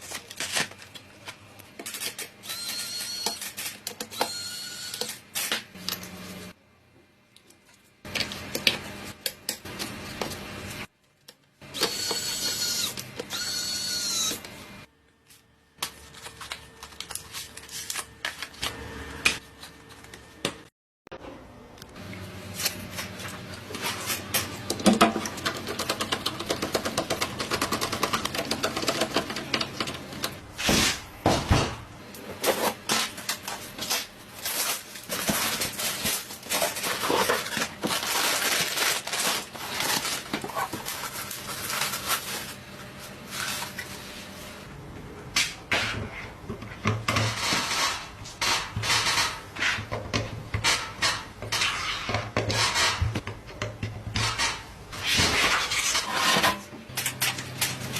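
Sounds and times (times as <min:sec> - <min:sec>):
plastic and metal rustling: 0:32.3 - 0:44.3.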